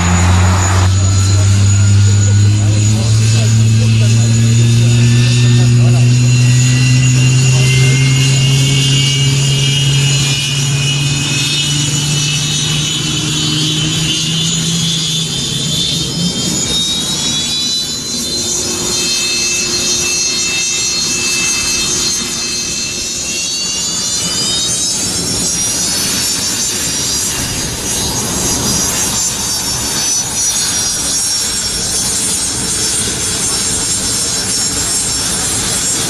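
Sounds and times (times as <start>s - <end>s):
low hum: 0.0s - 17.4s
aircraft engines whining: 0.0s - 36.0s.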